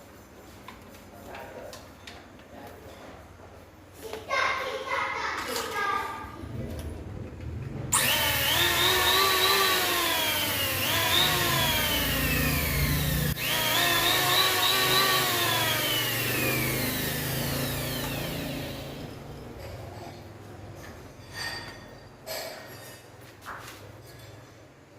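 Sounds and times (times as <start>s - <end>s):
power tool motor spinning up: 7.9s - 19.4s.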